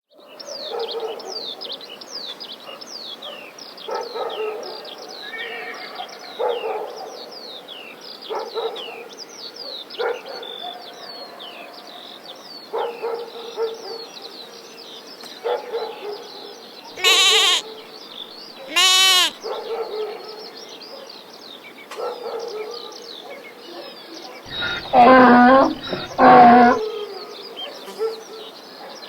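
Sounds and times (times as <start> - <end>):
dog barking: 0.5 - 1.4, 3.9 - 4.9, 6.4 - 7.2, 8.3 - 9.1, 10.0 - 11.4, 12.7 - 14.1, 15.4 - 17.7, 18.7 - 21.2, 21.9 - 27.0, 27.6 - 29.0
small birds chirping: 17.0 - 19.5, 24.5 - 26.8.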